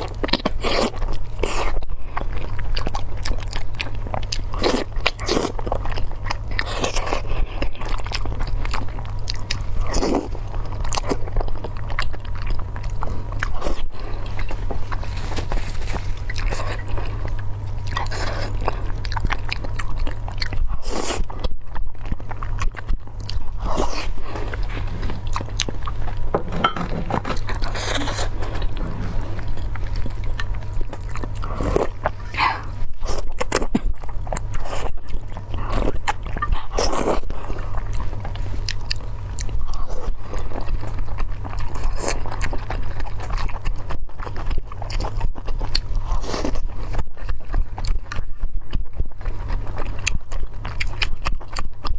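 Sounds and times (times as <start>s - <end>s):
biting and chewing food: 0.0s - 51.9s
steady low hum: 0.0s - 51.9s.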